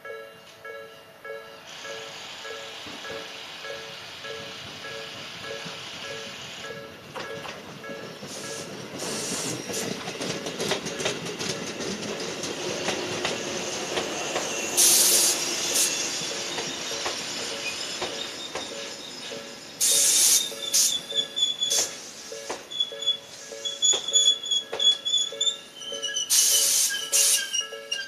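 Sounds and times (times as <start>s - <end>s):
level crossing warning bell: 0.0s - 8.9s, 15.9s - 28.0s
loud hiss bursts: 1.7s - 6.7s, 8.3s - 9.6s, 13.4s - 19.0s, 19.8s - 21.1s, 26.3s - 27.5s
train wheels clacking on rail joints: 2.8s - 3.3s, 4.2s - 28.0s.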